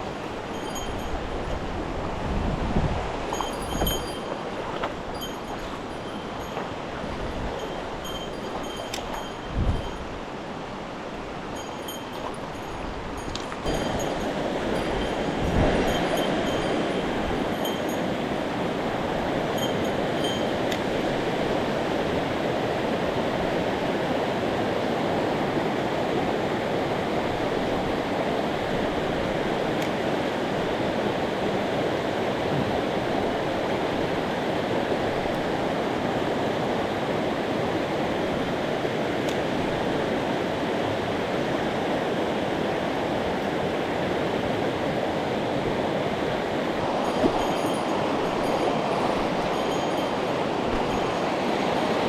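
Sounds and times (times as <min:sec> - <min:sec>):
stream water rushing over rocks: 0:00.0 - 0:52.0.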